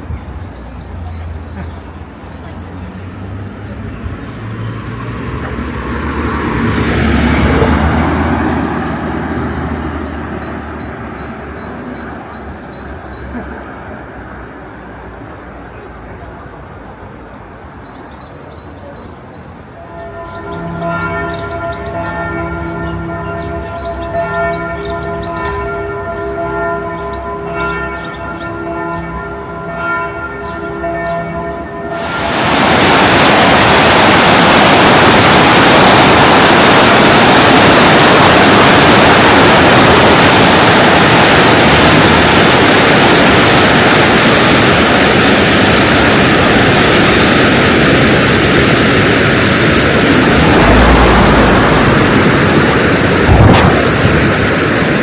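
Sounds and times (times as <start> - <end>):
loud steady rushing noise: 2.4 - 11.6, 31.7 - 55.0
church bells ringing: 19.8 - 45.4.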